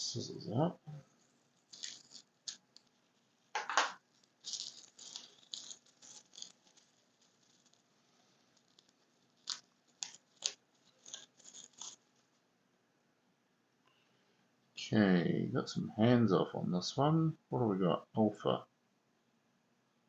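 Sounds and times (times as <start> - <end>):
crackling rustling handling noise: 1.0 - 12.5.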